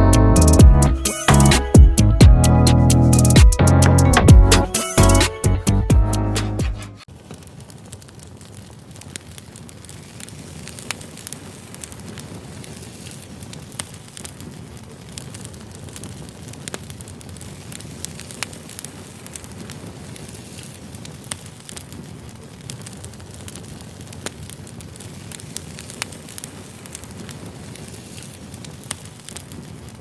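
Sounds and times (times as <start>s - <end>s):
fire popping: 0.4s - 30.0s
firewood burning and crackling: 7.0s - 30.0s.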